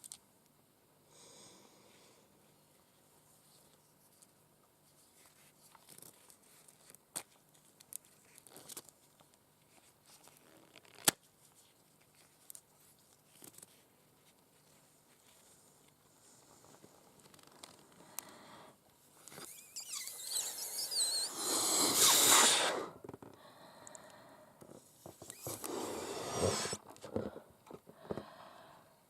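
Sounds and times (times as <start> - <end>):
nails scratching on balloon: 19.4 - 23.2, 25.1 - 27.0.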